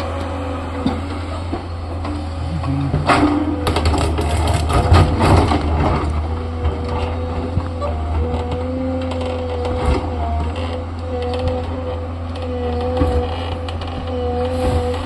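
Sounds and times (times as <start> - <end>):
excavator diesel engine running: 0.0 - 15.0
rock crunching and clattering: 3.0 - 7.6.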